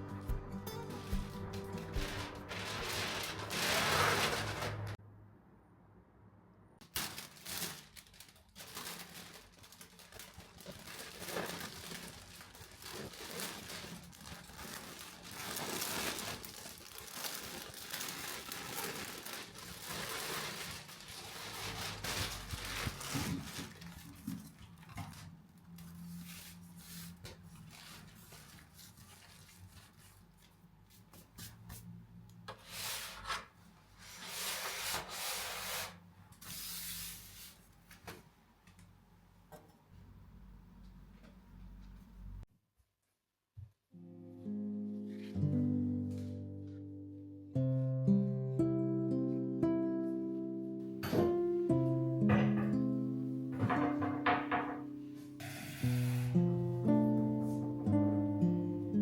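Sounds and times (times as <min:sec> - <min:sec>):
rustling and crinkling of handling: 0:00.8 - 0:05.0, 0:06.8 - 0:38.4, 0:53.5 - 0:55.4.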